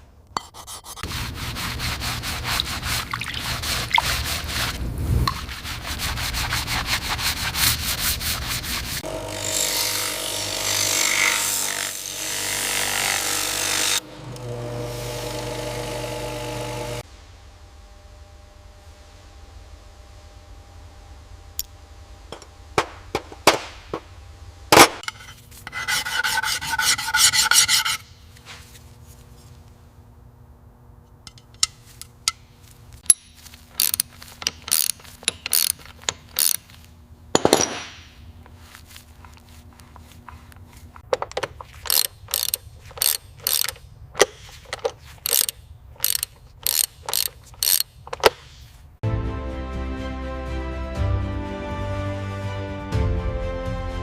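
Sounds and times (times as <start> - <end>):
rasping scrape: 0.4 - 9.0, 25.0 - 29.5, 38.5 - 48.8
hand tools clicking on metal: 31.2 - 32.4, 33.0 - 37.9, 39.2 - 48.5
ratchet wrench burst: 33.7 - 36.7, 41.2 - 48.3.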